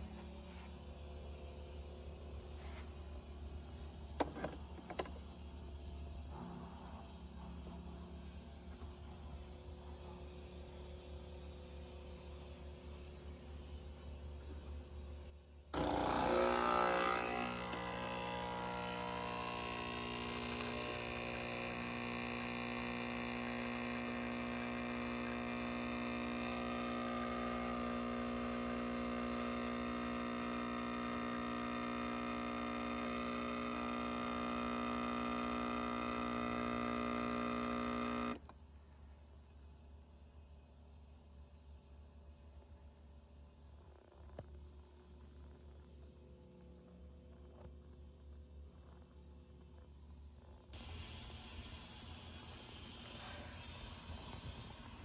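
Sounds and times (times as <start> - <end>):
droning hum of held tones: 5.0 - 40.0.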